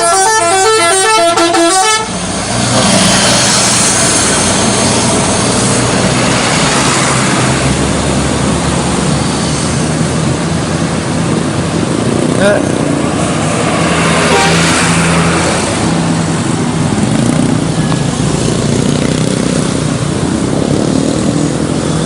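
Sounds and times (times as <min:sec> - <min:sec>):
bus multi-tone horn: 0:00.0 - 0:02.2, 0:14.2 - 0:14.9
bus engine rumble: 0:00.0 - 0:22.0.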